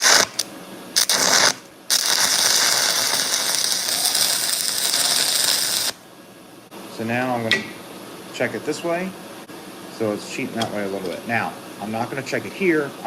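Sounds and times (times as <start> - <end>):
welding arc crackling: 0.0 - 6.0.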